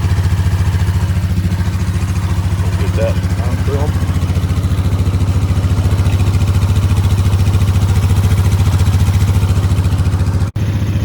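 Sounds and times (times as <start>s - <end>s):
atv engine idling: 0.0s - 11.0s.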